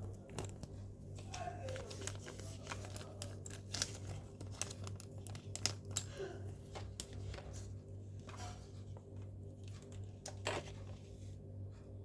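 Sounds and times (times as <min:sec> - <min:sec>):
toy packaging rustling: 0:00.0 - 0:06.1.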